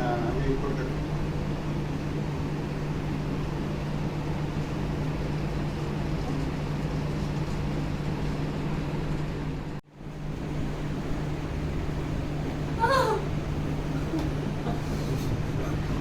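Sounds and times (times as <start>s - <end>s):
machine hum: 10.0s - 16.0s.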